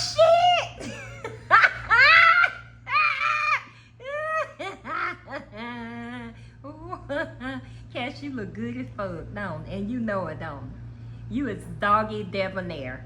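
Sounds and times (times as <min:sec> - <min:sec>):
woman laughing hard: 0:00.2 - 0:07.5.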